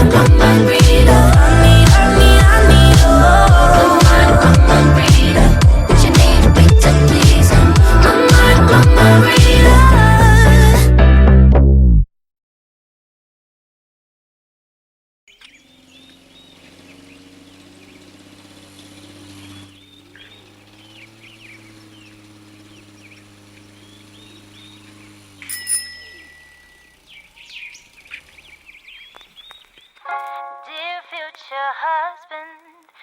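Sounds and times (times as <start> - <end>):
low hum: 0.0 - 11.2, 15.4 - 29.1
music with sung harmonies: 0.0 - 11.5
birds chirping: 15.3 - 31.6
sharp hit with ringing tone: 25.4 - 27.0.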